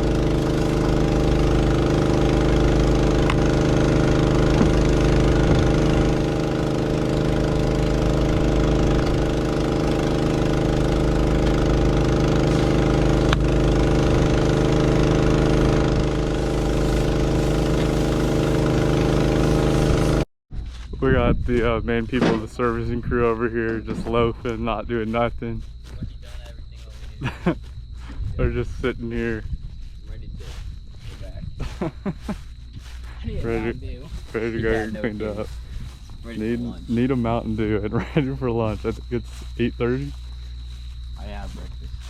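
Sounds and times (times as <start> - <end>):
diesel engine droning: 0.0 - 20.2, 30.2 - 42.0.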